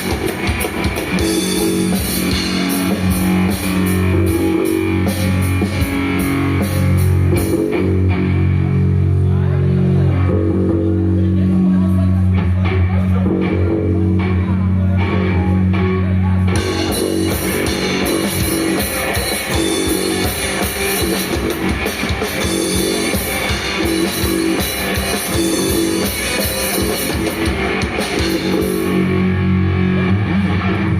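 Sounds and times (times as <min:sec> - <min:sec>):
drums and cymbals: 0:00.0 - 0:08.2, 0:16.6 - 0:29.4
nu metal band playing live: 0:00.0 - 0:30.9.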